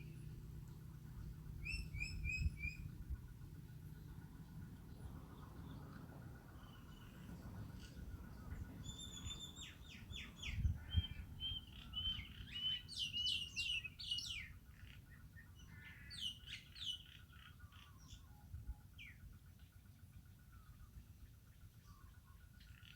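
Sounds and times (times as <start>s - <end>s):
birds chirping and singing: 4.9s - 18.3s.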